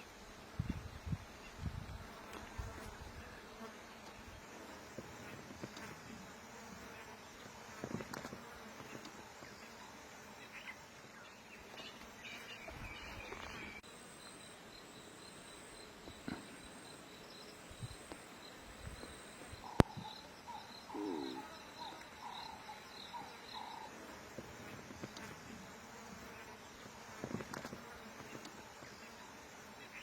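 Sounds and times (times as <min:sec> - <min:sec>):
insects buzzing: 0:00.0 - 0:30.0
bird calling: 0:19.6 - 0:23.9.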